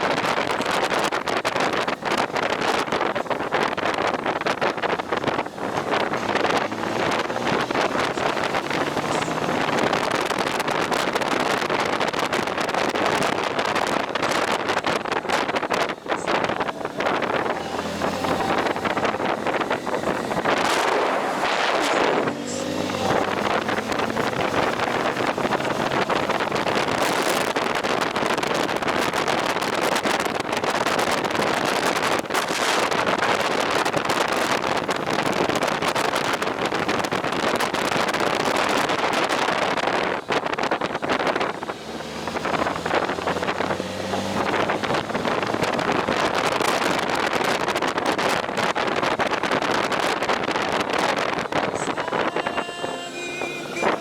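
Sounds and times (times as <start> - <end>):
faint motorcycle engine: 0.0 - 54.0
wind rushing over microphone: 0.0 - 54.0.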